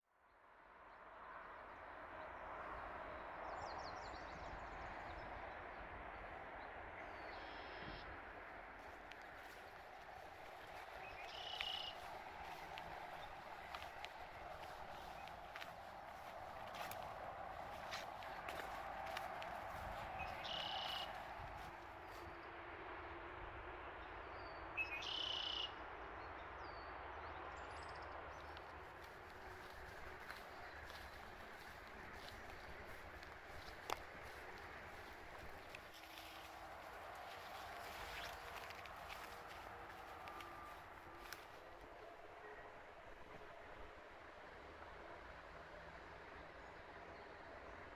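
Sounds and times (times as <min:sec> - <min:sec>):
steady outdoor hiss: 0:00.4 - 0:47.9
birds chirping: 0:03.4 - 0:22.4, 0:28.3 - 0:43.8
river water flowing: 0:08.2 - 0:22.3, 0:28.6 - 0:45.1
bird buzzy calls: 0:10.8 - 0:13.4, 0:20.1 - 0:21.4.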